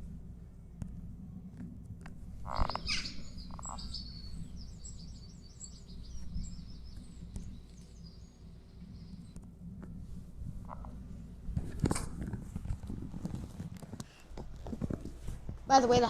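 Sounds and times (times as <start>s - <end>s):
small songbird chirping: 2.5s - 9.4s.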